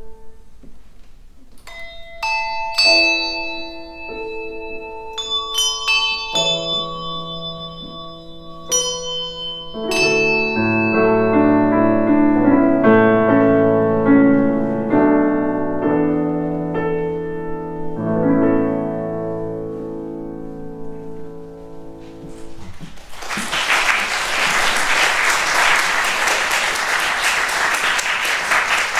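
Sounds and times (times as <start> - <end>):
handbell ringing: 1.7 - 11.8
piano chords: 1.7 - 22.6
audience applause: 22.7 - 28.9.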